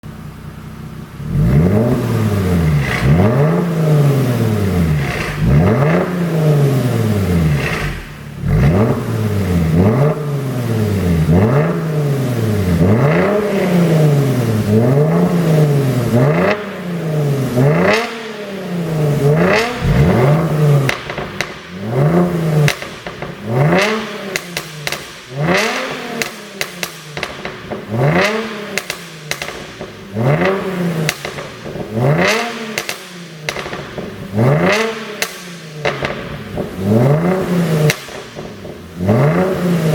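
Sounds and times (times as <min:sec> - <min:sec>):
car engine revving: 0:00.4 - 0:39.9
exhaust pops and crackles: 0:19.2 - 0:39.6.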